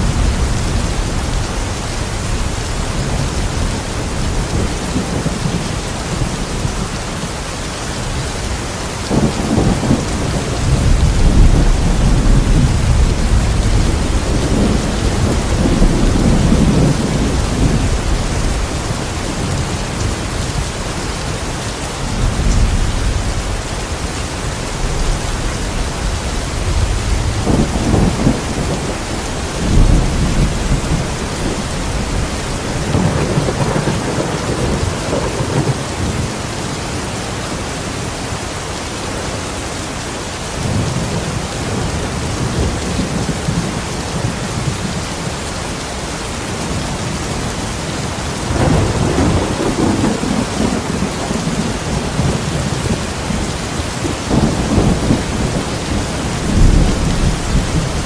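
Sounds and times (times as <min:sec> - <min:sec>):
heavy rain: 0:00.0 - 0:58.0
rolling thunder: 0:09.0 - 0:21.1, 0:24.8 - 0:36.4, 0:46.6 - 0:58.0.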